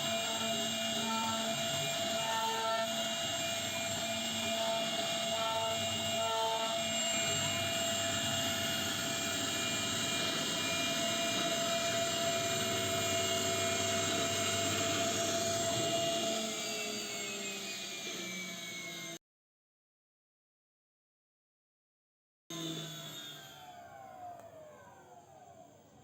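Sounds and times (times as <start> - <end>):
hiss of wood cutting: 0.0 - 19.2
router spindle whine: 0.0 - 19.2, 22.5 - 26.0.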